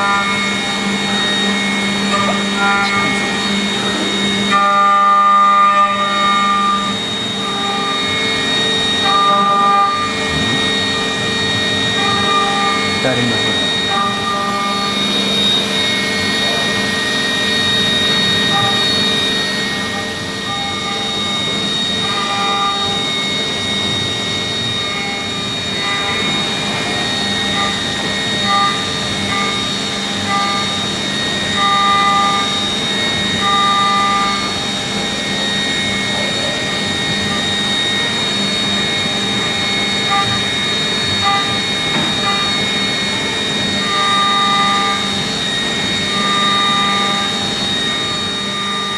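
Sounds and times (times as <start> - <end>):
milling machine spindle whine: 0.0 - 48.9.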